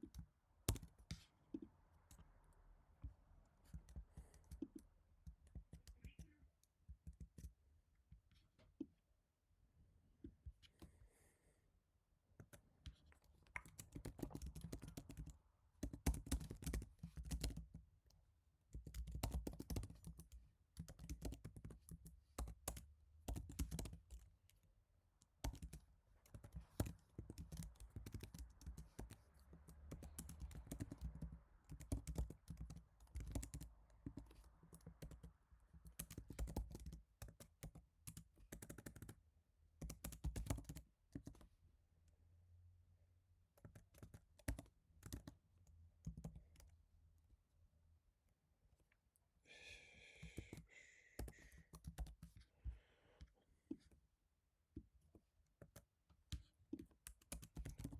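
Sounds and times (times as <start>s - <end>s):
keyboard typing: 0.0s - 2.2s, 12.4s - 17.8s, 18.7s - 24.6s, 25.3s - 39.2s, 39.8s - 41.5s, 43.6s - 45.4s, 46.0s - 46.7s, 50.2s - 52.4s, 55.6s - 57.9s.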